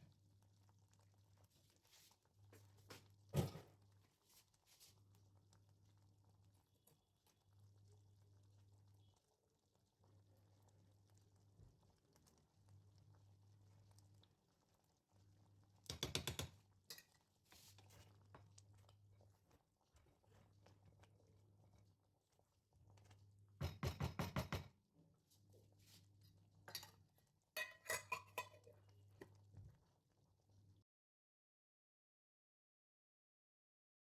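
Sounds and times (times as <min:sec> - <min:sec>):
metal utensil rattling in pot: 0:26.7 - 0:27.0, 0:27.6 - 0:28.8.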